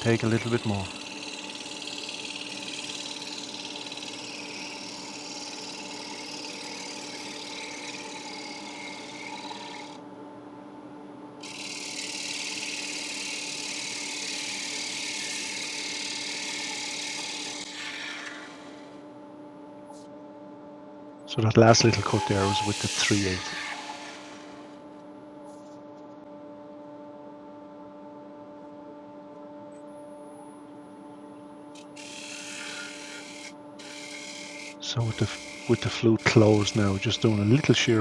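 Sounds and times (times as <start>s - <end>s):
gouge cutting wood hiss: 0.0s - 10.0s, 11.4s - 19.0s, 21.8s - 24.8s, 31.8s - 38.0s
lathe motor hum: 0.0s - 10.3s, 11.4s - 19.3s, 21.6s - 25.1s, 31.8s - 38.0s.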